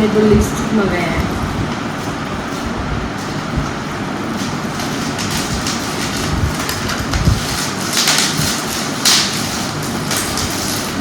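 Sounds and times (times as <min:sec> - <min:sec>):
steady background noise: 0:00.0 - 0:11.0
packaging crinkling: 0:03.2 - 0:11.0.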